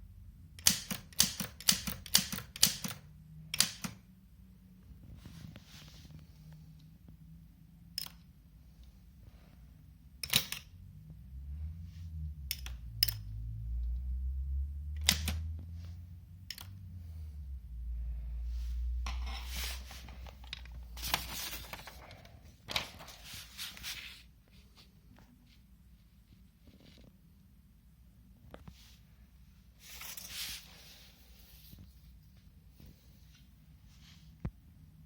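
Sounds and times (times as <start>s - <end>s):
typewriter clacks: 0.6s - 3.0s, 3.6s - 4.0s.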